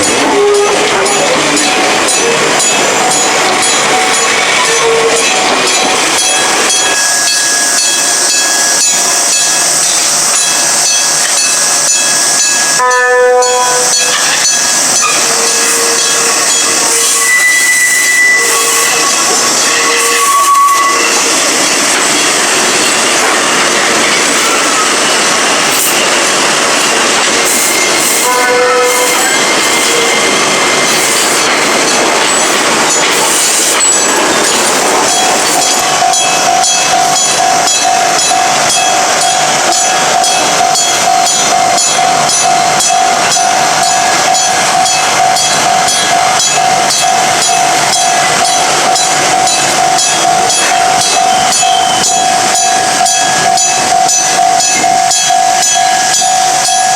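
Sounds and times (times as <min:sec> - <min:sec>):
train running: 0:00.0 - 0:56.9
short horn-like tones: 0:12.8 - 0:14.0
level crossing bell ringing: 0:31.9 - 0:56.9.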